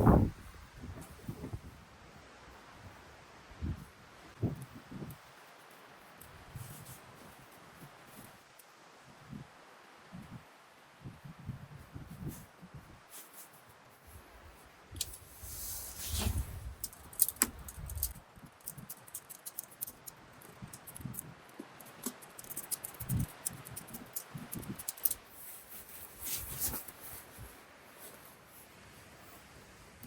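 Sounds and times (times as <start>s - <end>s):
brief rustle: 15.0s - 20.1s, 22.0s - 28.4s
objects clicking and tapping: 16.8s - 25.2s.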